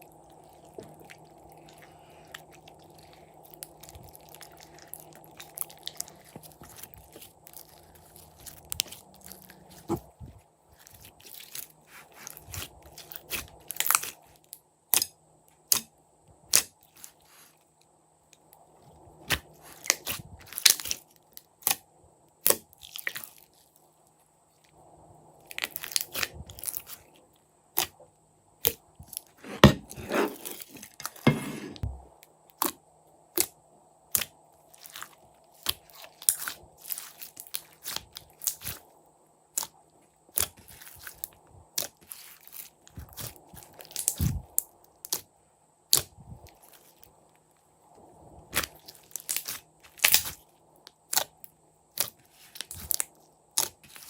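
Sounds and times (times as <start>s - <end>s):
slime squish: 0.0s - 14.3s, 34.1s - 38.8s, 39.5s - 39.7s, 40.3s - 45.2s, 48.5s - 50.4s, 51.1s - 54.0s
slime crackling and popping: 10.8s - 14.2s, 34.1s - 38.8s, 41.8s - 45.2s, 48.5s - 50.4s, 52.0s - 54.0s.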